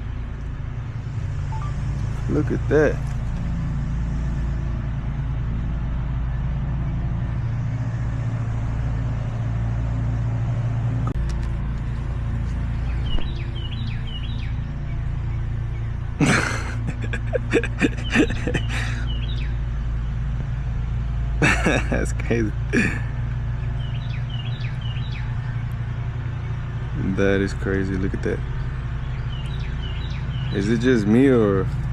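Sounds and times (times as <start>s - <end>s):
low machine hum: 0.0s - 31.9s
faint chirps: 1.5s - 1.8s
sputtering clicks: 11.0s - 14.4s.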